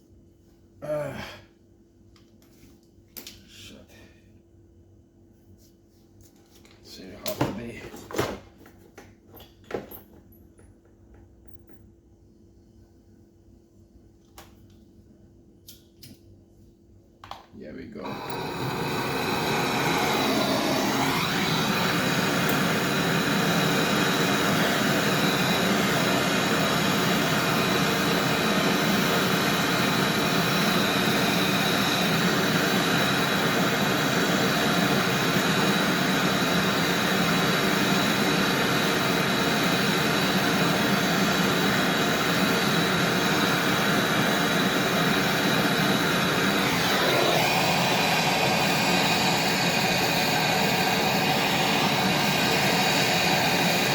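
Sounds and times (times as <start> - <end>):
gas rushing roar: 17.9 - 53.9.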